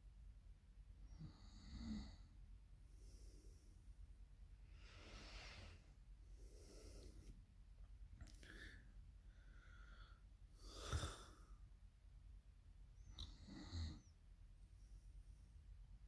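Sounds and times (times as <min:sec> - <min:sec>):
woman breathing in sleep: 0:04.7 - 0:07.4, 0:08.4 - 0:11.6.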